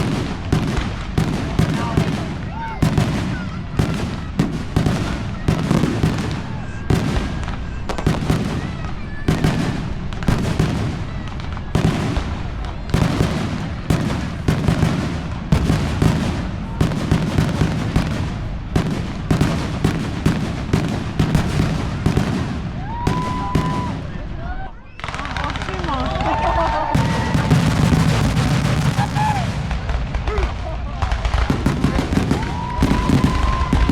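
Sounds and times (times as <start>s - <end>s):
firework bangs: 0.0s - 33.9s
firework whistle: 31.6s - 33.9s.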